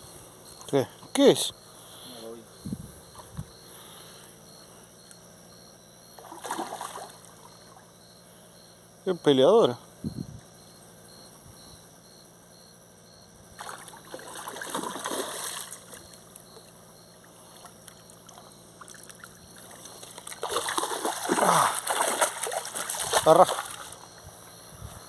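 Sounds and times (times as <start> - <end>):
water splashing and sloshing: 6.2 - 7.9, 13.5 - 24.3.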